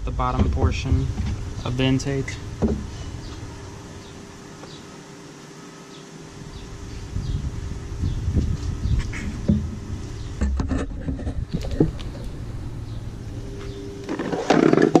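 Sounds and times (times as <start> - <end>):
steady buzzing hum: 0.0 - 15.0.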